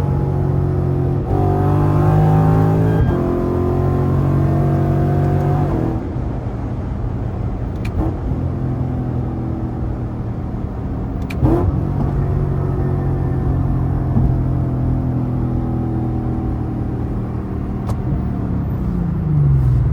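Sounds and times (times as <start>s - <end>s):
car engine running under load: 0.0s - 19.9s.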